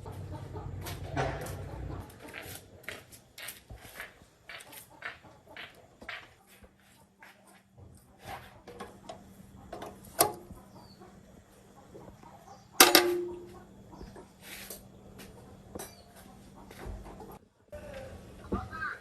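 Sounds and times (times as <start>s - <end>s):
metal tools clinking: 12.8s - 13.5s
loud ringing metallic clanks: 12.8s - 13.6s.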